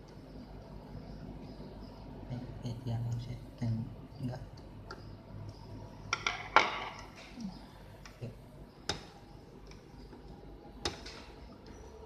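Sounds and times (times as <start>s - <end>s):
small sharp clicks and taps: 8.8s - 11.8s.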